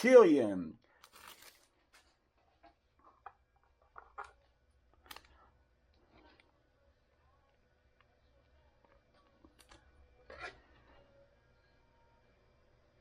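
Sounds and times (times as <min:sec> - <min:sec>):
trading cards clicking and rustling: 0:01.0 - 0:02.1.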